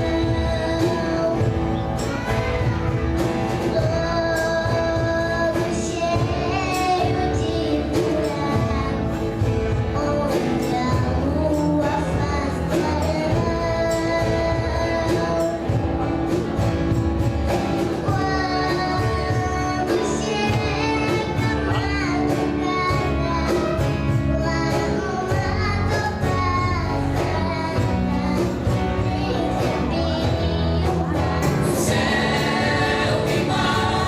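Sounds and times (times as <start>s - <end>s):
young voices singing: 0.0s - 16.4s, 17.5s - 34.0s
band with steady drum beat: 0.0s - 34.0s.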